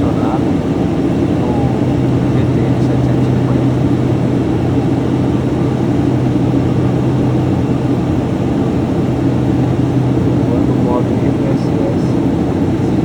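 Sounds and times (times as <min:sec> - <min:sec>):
turboprop engines droning in cabin: 0:00.0 - 0:13.0.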